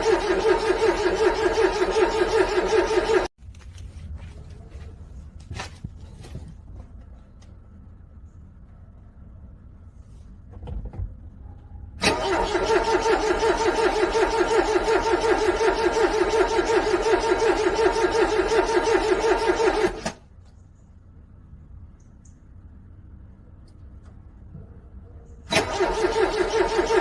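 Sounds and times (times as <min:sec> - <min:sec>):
car starter cranking engine: 0:00.0 - 0:03.3, 0:12.0 - 0:20.2, 0:25.5 - 0:27.0.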